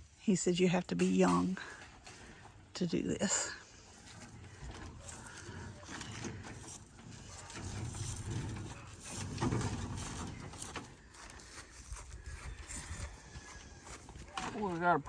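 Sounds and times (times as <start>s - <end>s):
wooden cart rumbling on wheels: 3.9s - 15.0s.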